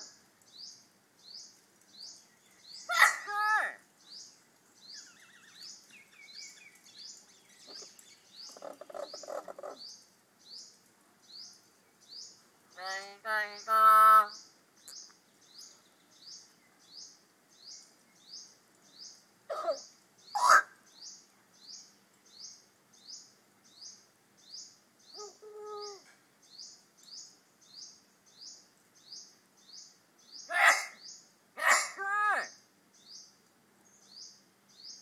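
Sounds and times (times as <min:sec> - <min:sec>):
bird chirping: 0:00.0 - 0:35.0.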